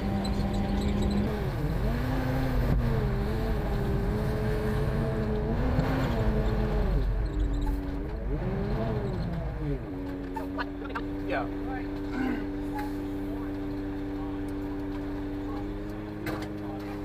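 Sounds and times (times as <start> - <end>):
diesel truck engine: 0.0 - 17.0.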